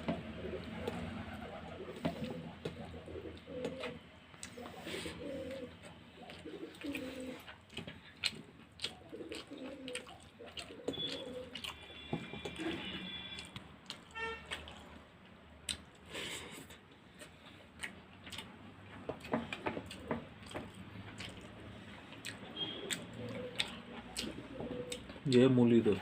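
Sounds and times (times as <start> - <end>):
pigeons cooing: 0.0 - 7.6, 8.8 - 11.7, 22.5 - 25.2
person eating by hand: 1.8 - 25.5.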